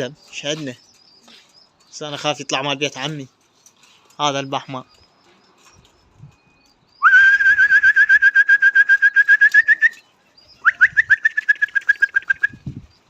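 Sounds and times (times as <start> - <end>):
loud trilled whistle: 7.0 - 10.0, 10.6 - 12.6.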